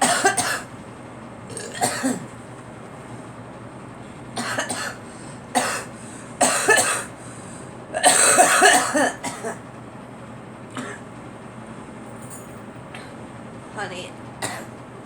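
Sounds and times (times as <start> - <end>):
girl coughing: 0.0 - 0.7, 1.5 - 2.3, 4.4 - 5.0, 5.6 - 7.2, 8.0 - 9.6, 10.8 - 11.0, 14.4 - 14.7.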